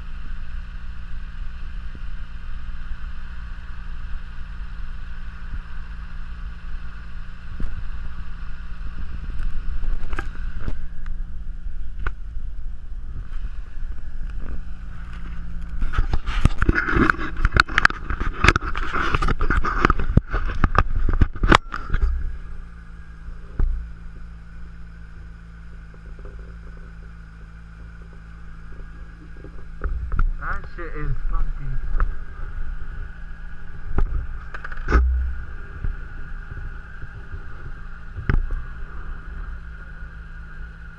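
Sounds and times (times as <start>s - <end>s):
low engine hum: 0.0s - 40.9s
scraping and knocking: 14.9s - 22.2s.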